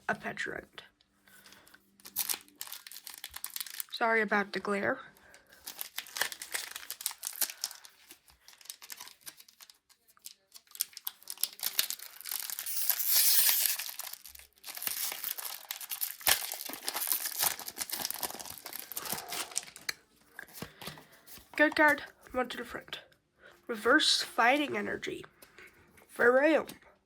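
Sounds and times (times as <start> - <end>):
foil wrapper crinkling: 1.4 - 4.0, 5.3 - 21.6
foil tearing: 2.0 - 4.0, 5.6 - 19.9.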